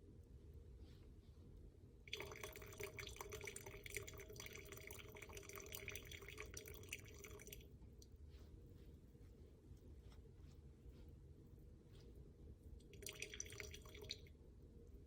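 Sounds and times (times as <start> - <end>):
liquid pouring: 2.1 - 7.7, 12.9 - 14.3.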